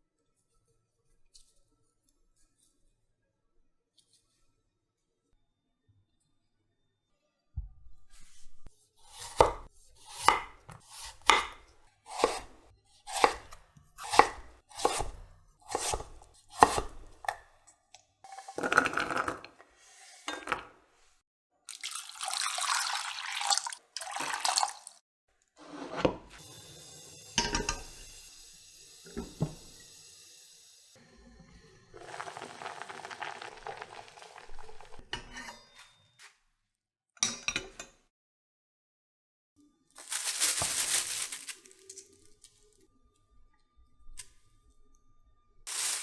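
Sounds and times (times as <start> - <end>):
knife chopping on cutting board: 9.1 - 17.4.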